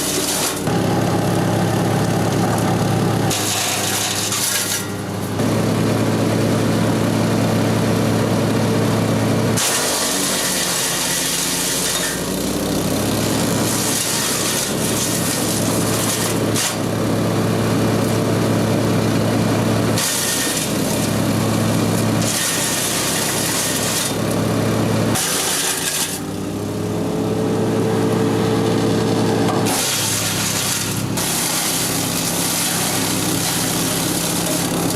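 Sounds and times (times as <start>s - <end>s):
branches shredding and chipping: 0.0s - 5.4s, 9.6s - 17.2s, 19.9s - 26.6s, 29.5s - 34.9s
wood chipper engine running: 0.0s - 34.9s.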